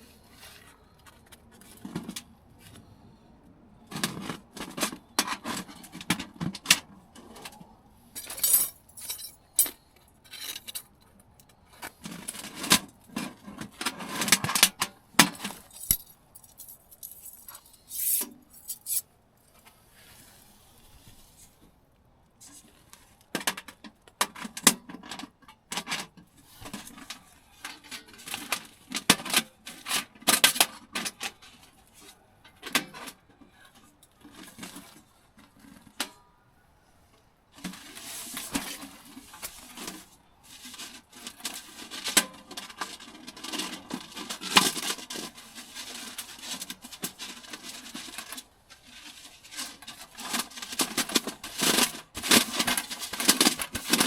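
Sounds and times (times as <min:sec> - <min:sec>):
handling clicks and clinks: 0:08.2 - 0:11.6, 0:14.2 - 0:19.0.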